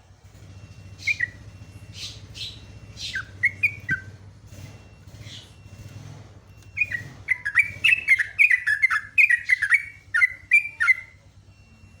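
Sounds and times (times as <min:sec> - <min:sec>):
bird singing chattering notes: 0:00.9 - 0:04.2, 0:05.1 - 0:05.6, 0:06.7 - 0:11.2.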